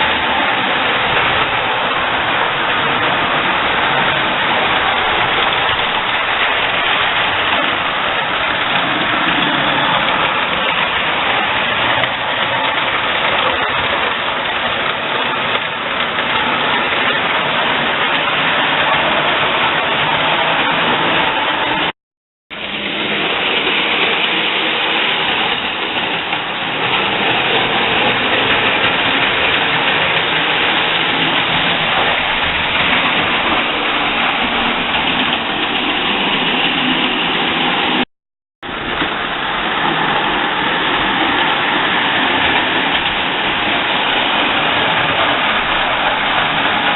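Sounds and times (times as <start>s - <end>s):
model train rumbling on track: 0.0s - 21.9s, 22.5s - 38.0s, 38.6s - 46.9s.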